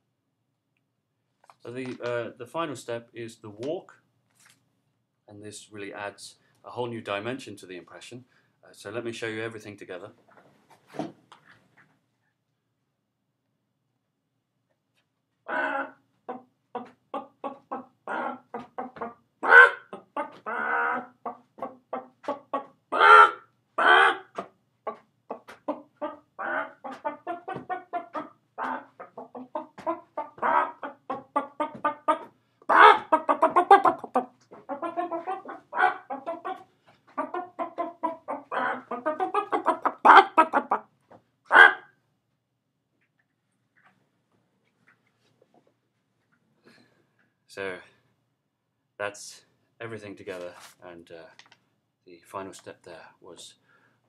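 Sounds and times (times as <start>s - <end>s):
man imitating chicken clucks: 15.5s - 16.0s, 16.8s - 21.2s, 22.0s - 24.3s, 26.1s - 36.6s, 37.2s - 40.9s.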